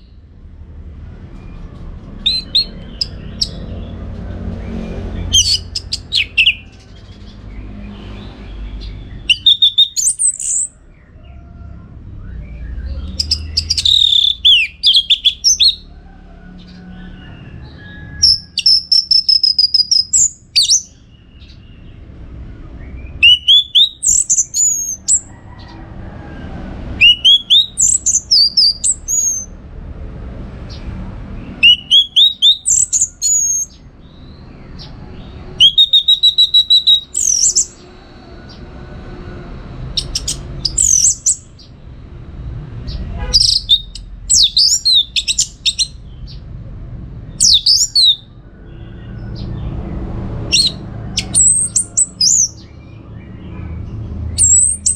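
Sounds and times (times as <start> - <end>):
thrush singing: 2.2 - 10.8, 12.4 - 15.9, 23.1 - 25.7, 26.7 - 29.5, 31.6 - 33.8, 34.8 - 41.6, 43.3 - 46.0, 47.4 - 48.3.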